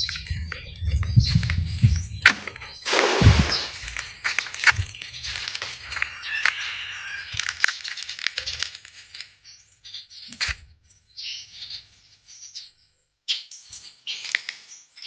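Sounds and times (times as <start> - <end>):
crackling with sharp clicks: 7.4 - 9.4.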